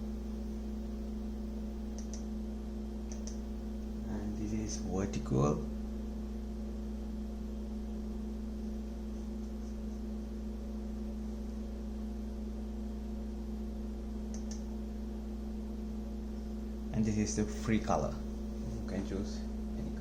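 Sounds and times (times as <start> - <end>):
steady electrical hum: 0.0 - 20.0
faint click: 2.0 - 2.2, 14.3 - 14.6.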